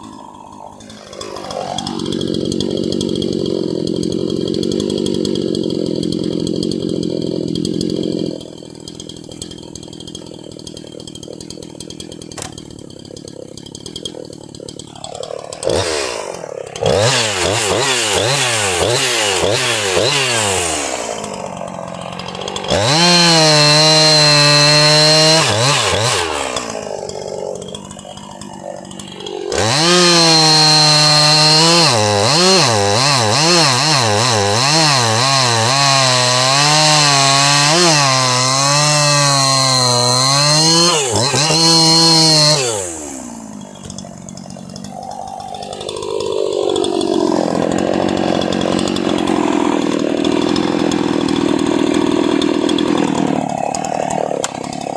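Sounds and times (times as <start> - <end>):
chainsaw engine revving: 0.0 - 54.9.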